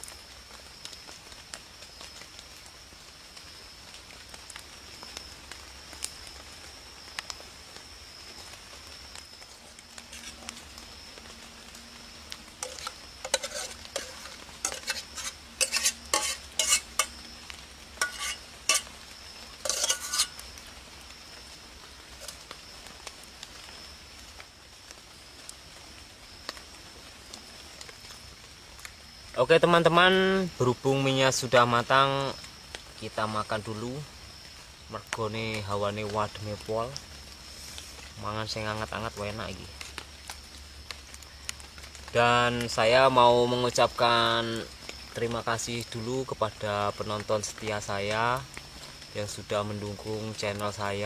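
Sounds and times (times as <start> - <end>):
insect drone: 0.0 - 51.0
metal utensil scraping a pot: 10.1 - 10.6, 12.6 - 17.2, 18.0 - 18.9, 19.6 - 20.4, 22.2 - 22.4.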